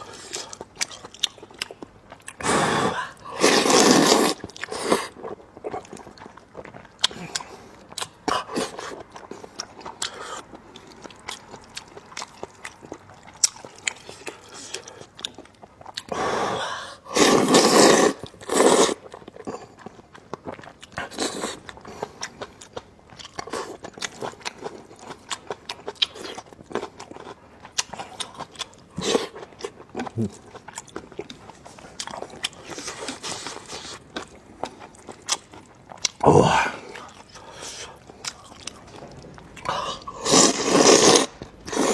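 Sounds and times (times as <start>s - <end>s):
chewing and wet mouth clicks: 0.3s - 2.4s, 4.4s - 16.1s
loud slurping of noodles: 2.4s - 5.1s, 16.2s - 19.0s, 40.2s - 41.9s.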